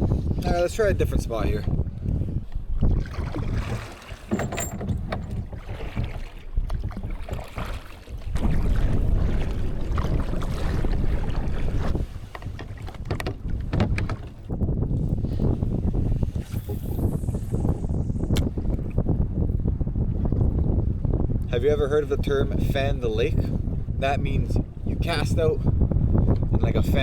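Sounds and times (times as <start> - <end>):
wind buffeting microphone: 0.0 - 27.0
kayak paddle splashing: 2.8 - 17.6.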